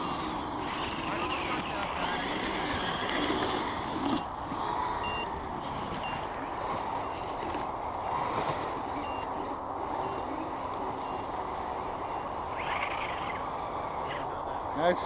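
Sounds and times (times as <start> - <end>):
rc trucks whirring: 0.0 - 15.0
faint high beeps: 5.0 - 5.3, 6.0 - 7.5, 8.9 - 13.0.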